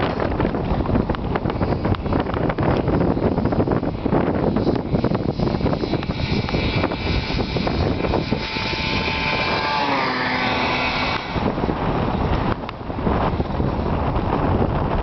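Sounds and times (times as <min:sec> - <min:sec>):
wind noise on microphone: 0:00.0 - 0:15.0
snowmobile engine passing by: 0:04.8 - 0:12.4.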